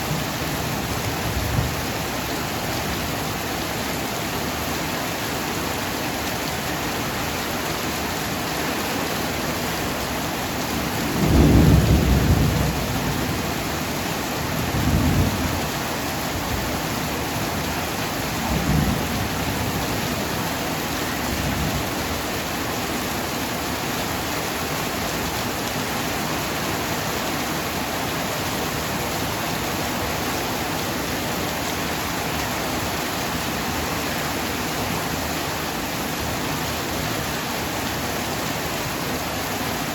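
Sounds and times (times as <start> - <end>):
heavy rain: 0.0 - 39.9
thunder rumbling: 11.0 - 13.5.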